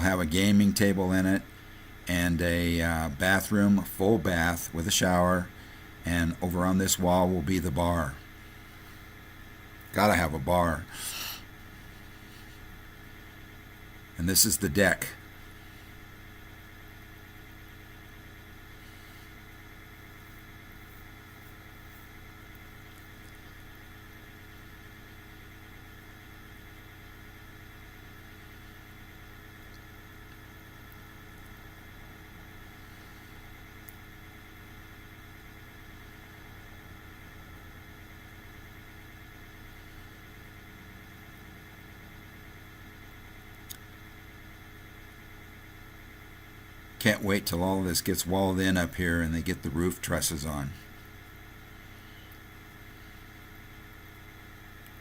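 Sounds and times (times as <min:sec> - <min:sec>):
laptop cooling fan humming: 0:00.0 - 0:55.0.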